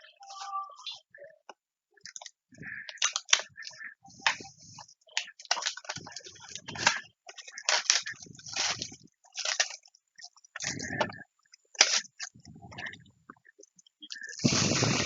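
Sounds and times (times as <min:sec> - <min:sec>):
plastic wrap crinkling: 0:02.9 - 0:03.5, 0:04.2 - 0:11.0, 0:11.7 - 0:12.3.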